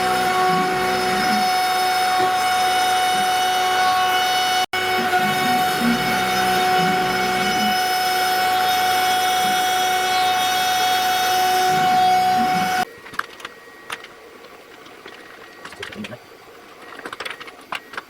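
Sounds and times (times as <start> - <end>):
low rumble of cutting wood: 0.0 - 12.8
router spindle whine: 0.0 - 14.4.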